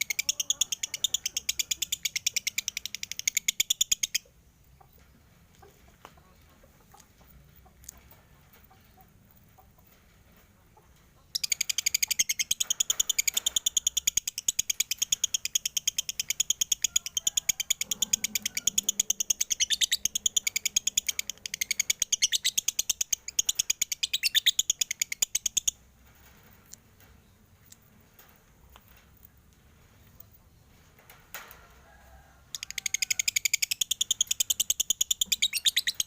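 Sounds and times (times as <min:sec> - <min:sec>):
lovebird chattering: 0:00.0 - 0:04.2, 0:11.3 - 0:25.8, 0:32.6 - 0:36.0.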